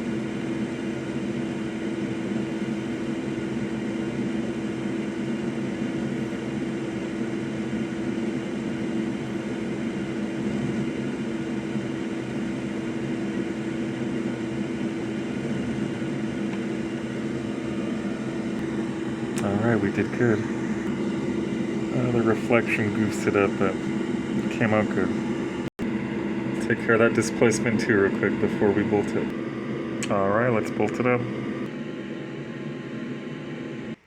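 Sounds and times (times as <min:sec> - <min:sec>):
constant low hum: 0:00.0 - 0:34.0
hot-air tool blowing: 0:00.0 - 0:34.0.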